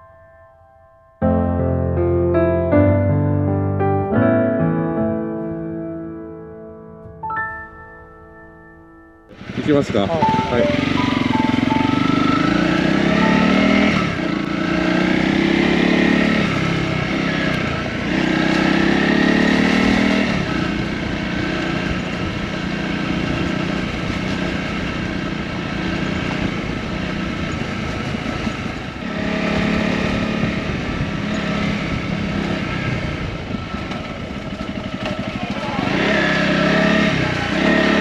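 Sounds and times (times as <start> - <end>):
dirt bike engine accelerating: 9.3 - 38.0.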